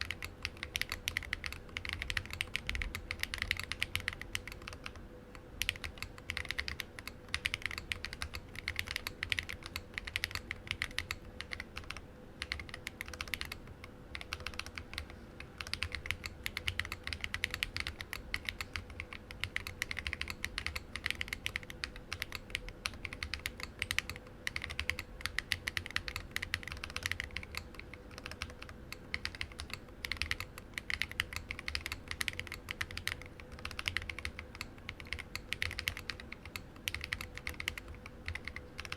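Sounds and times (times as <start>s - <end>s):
faint steady hum: 0.0s - 38.9s
mechanical keyboard typing: 0.0s - 38.9s.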